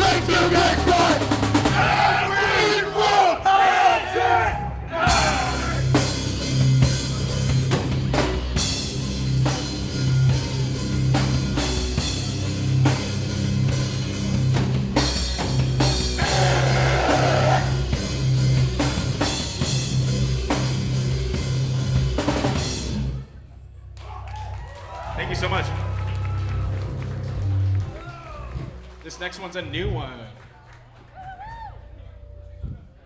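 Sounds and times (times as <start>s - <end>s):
heavy rock band playing: 0.0s - 3.2s, 3.8s - 23.2s
pounding drum kit: 0.0s - 23.2s.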